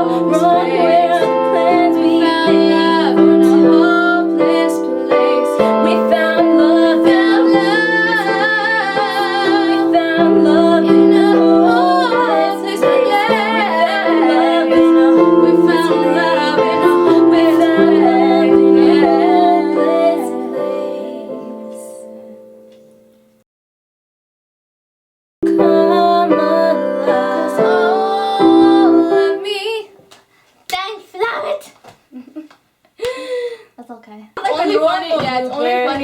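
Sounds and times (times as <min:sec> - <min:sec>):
woman singing: 0:00.0 - 0:22.3, 0:25.4 - 0:30.0
piano chords: 0:00.0 - 0:23.3, 0:25.4 - 0:29.8.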